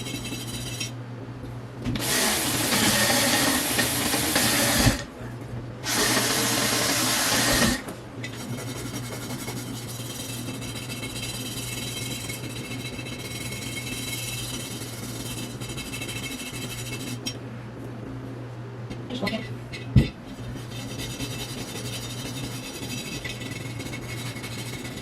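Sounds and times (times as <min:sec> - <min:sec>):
electric power tool running: 0:02.0 - 0:05.1, 0:05.8 - 0:07.9.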